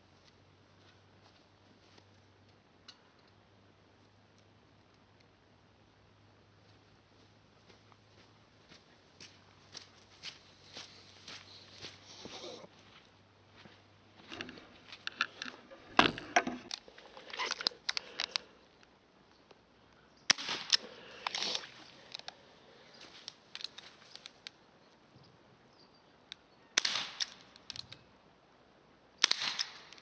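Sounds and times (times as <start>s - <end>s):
small clicks and knocks: 14.3s - 18.5s, 27.2s - 28.0s
airgun shots: 20.3s - 20.8s, 26.8s - 27.5s, 29.2s - 30.0s.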